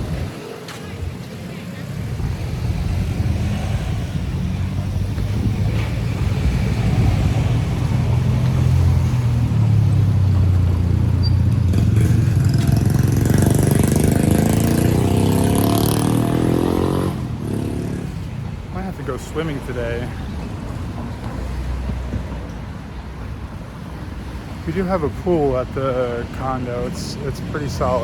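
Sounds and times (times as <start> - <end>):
vehicle engine revving: 2.0 - 18.4.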